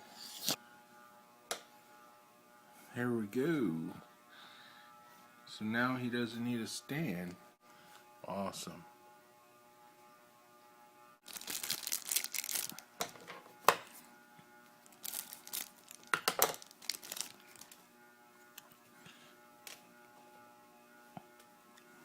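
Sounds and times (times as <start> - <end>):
plastic crinkling: 11.2 - 13.3, 14.8 - 17.8.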